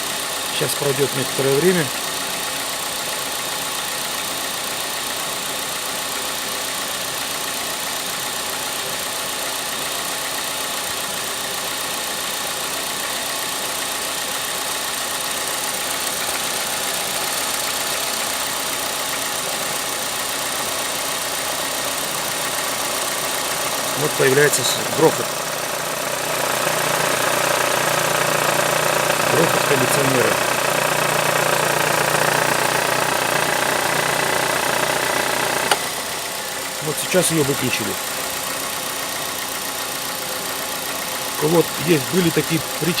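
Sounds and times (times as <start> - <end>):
car engine idling: 0.0 - 43.0
air-conditioning compressor running: 15.7 - 39.0.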